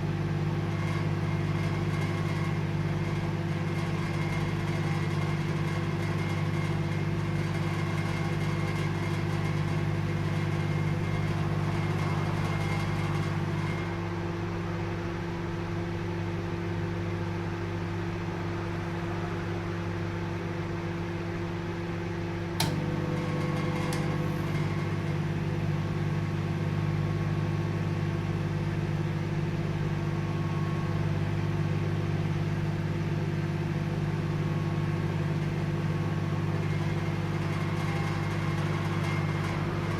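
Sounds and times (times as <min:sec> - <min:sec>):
microwave oven humming: 0:00.0 - 0:39.9
sharp click: 0:22.6 - 0:22.8.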